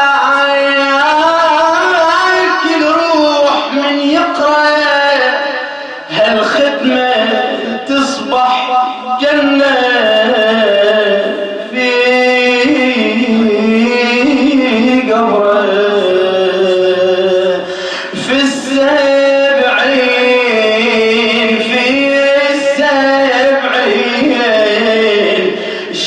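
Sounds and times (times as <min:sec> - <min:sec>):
man chanting mournful elegy: 0:00.0 - 0:26.0.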